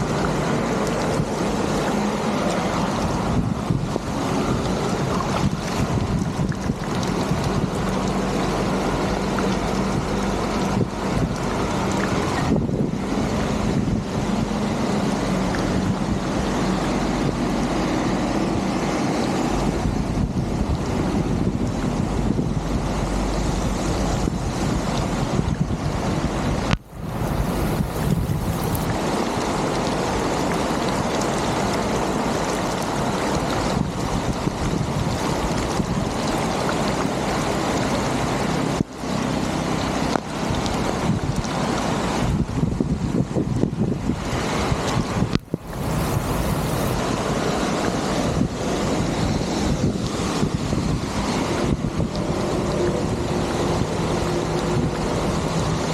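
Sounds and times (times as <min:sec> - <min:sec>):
water flowing: 0:00.0 - 0:42.5, 0:44.1 - 0:55.9
floodwater rushing through culvert: 0:00.0 - 0:55.9
wind buffeting microphone: 0:00.0 - 0:55.9.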